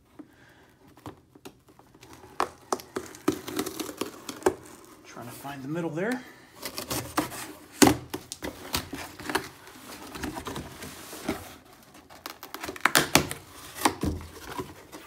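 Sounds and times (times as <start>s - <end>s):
cardboard and packing rustling: 0.0s - 15.0s
packing tape tearing: 0.9s - 5.0s, 6.6s - 15.0s.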